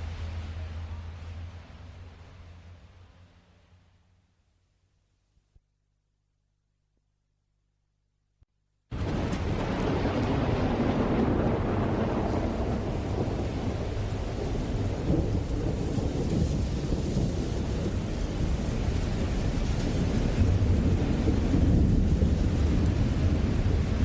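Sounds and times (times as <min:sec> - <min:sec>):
rolling thunder: 0:08.9 - 0:24.0
steady rain: 0:08.9 - 0:24.0.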